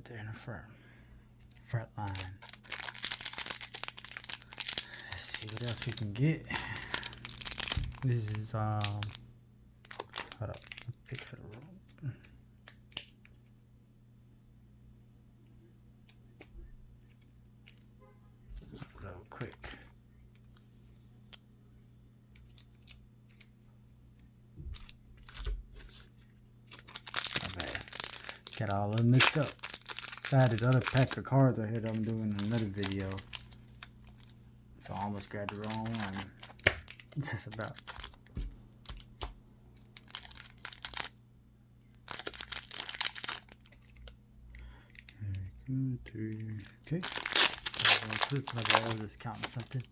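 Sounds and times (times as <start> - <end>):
steady low hum: 0.0 - 49.9
cards and packs rustling: 1.4 - 9.2, 9.8 - 11.7, 24.7 - 41.2, 42.0 - 45.5, 46.2 - 49.9
foil wrapper crinkling: 1.4 - 9.2, 9.8 - 11.6, 24.8 - 41.2, 41.9 - 45.1, 46.3 - 49.9.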